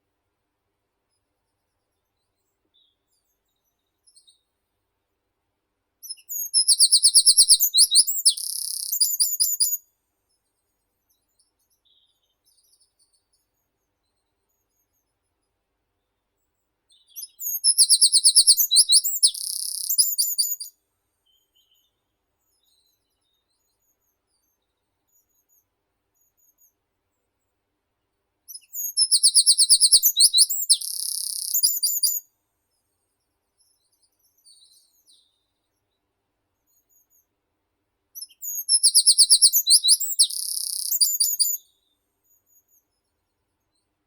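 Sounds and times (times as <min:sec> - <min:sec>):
songbird singing: 0:06.0 - 0:09.9, 0:16.9 - 0:24.5, 0:28.5 - 0:32.3, 0:38.2 - 0:42.8.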